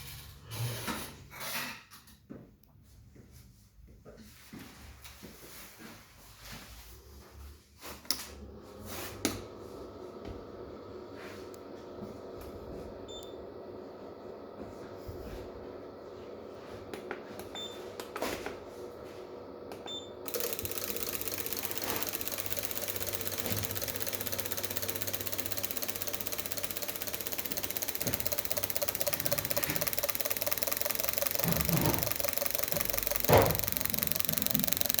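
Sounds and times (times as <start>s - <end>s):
car engine starting and ticking: 20.3s - 35.0s.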